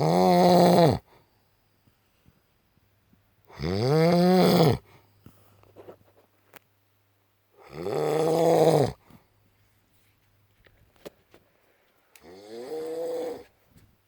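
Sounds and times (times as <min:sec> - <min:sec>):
man snoring loudly: 0:00.0 - 0:01.0, 0:03.6 - 0:04.8, 0:07.6 - 0:09.0, 0:12.2 - 0:13.5.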